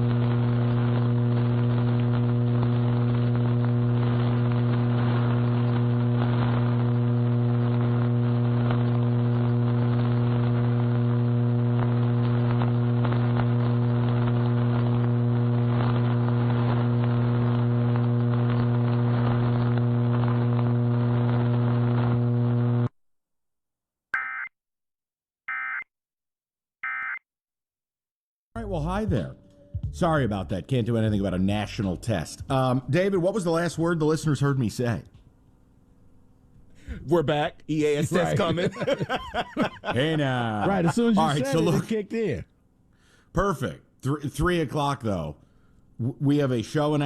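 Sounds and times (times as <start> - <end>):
loud electrical hum: 0.0 - 22.9, 28.7 - 47.0.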